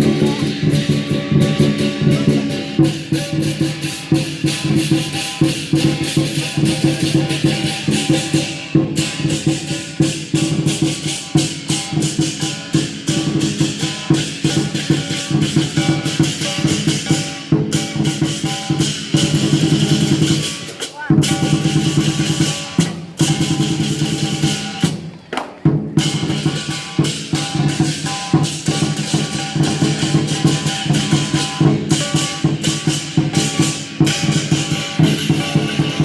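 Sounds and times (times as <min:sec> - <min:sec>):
cymbals clashing: 0:00.0 - 0:25.0, 0:26.0 - 0:36.0
drum beating fast rhythm: 0:00.0 - 0:36.0.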